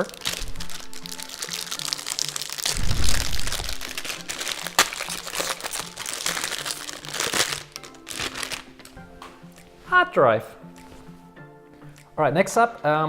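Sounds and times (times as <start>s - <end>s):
plastic wrapper crinkling: 0.0s - 9.0s.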